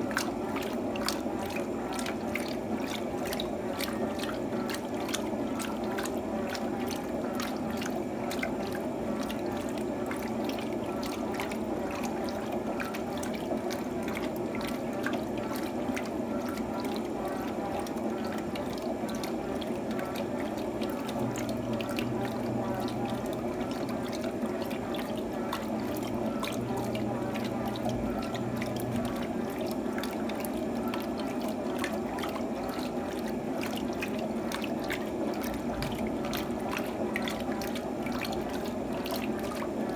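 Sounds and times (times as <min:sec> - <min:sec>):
water splashing in washing machine: 0:00.0 - 0:39.9.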